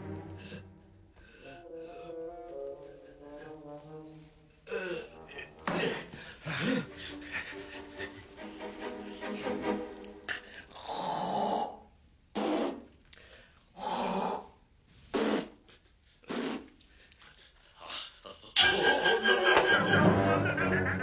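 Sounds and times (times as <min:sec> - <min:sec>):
music: 0:00.0 - 0:10.6, 0:18.6 - 0:21.0.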